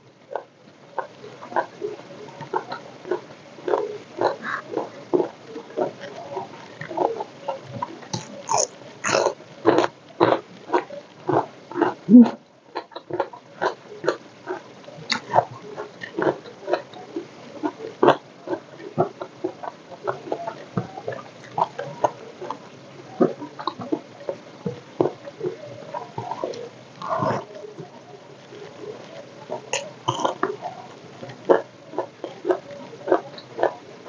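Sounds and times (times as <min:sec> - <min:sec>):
crispy food being chewed: 0:00.2 - 0:34.0
gulp: 0:02.5 - 0:17.0, 0:24.7 - 0:27.6, 0:29.5 - 0:33.8.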